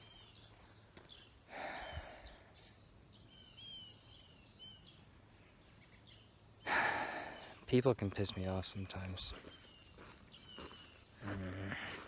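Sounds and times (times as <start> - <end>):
outdoor background noise: 0.0 - 12.0
songbird chirps: 0.0 - 12.0.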